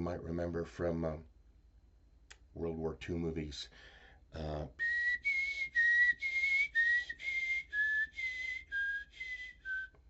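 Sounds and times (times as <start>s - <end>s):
person whistling a two-tone siren: 4.8s - 10.0s.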